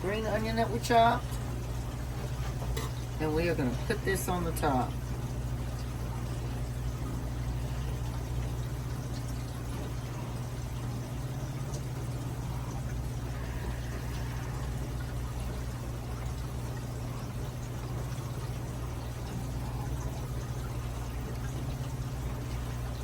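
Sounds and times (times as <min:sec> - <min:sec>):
low electrical hum: 0:00.0 - 0:23.0.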